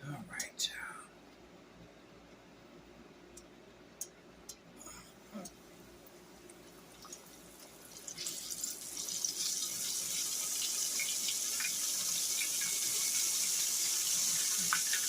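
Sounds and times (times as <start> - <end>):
liver sizzling in hot grease: 6.9 - 15.0.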